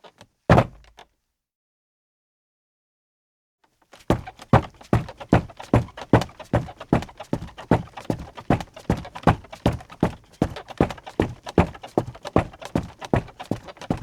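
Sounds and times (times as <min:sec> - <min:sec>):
footsteps on creaky floor: 0:04.0 - 0:14.0.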